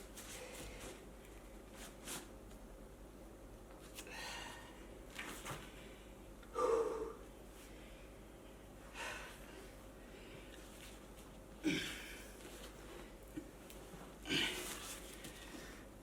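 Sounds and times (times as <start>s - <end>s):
man breathing hard: 4.0s - 4.9s, 5.8s - 8.2s, 8.9s - 10.6s.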